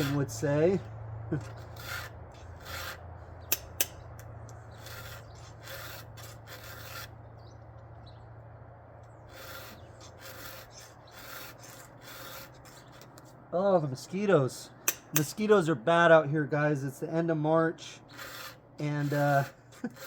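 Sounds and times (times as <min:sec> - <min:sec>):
file rasping on chain: 0:00.0 - 0:07.2, 0:09.2 - 0:13.2, 0:18.0 - 0:20.0
steady low hum: 0:00.0 - 0:20.0.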